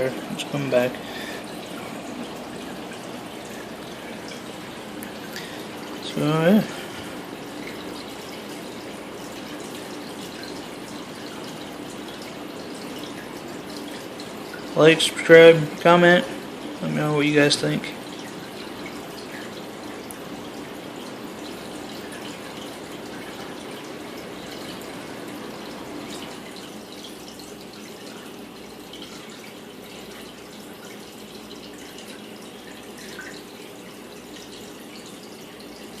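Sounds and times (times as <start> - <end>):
faint water drips: 0.0 - 36.0
water trickling and splashing: 0.0 - 36.0.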